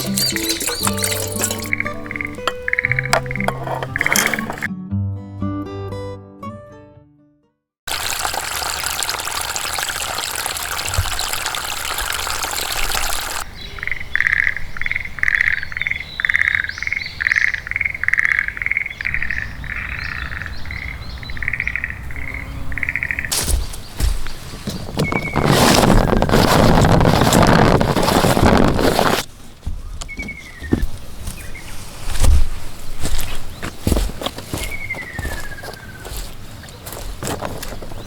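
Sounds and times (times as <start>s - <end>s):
frog croaking: 1.7s - 4.7s, 13.3s - 23.4s.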